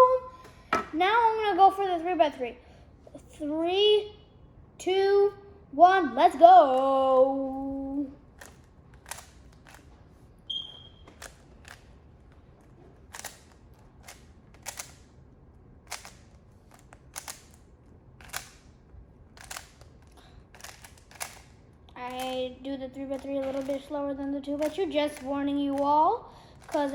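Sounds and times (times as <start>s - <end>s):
puzzle cube layers clicking: 8.4s - 9.9s, 13.1s - 15.1s, 15.8s - 17.6s, 18.2s - 18.8s, 19.4s - 22.4s, 24.5s - 25.9s
short high beep: 10.5s - 11.0s.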